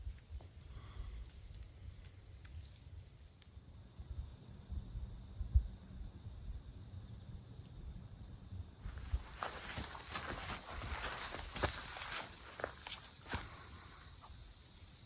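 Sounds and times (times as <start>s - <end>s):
insects droning: 0.0s - 15.0s
footsteps thumping: 8.8s - 14.6s.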